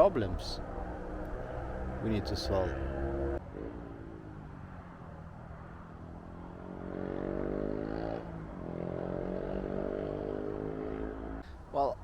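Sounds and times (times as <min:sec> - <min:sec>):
vehicle engine accelerating: 0:00.0 - 0:05.1.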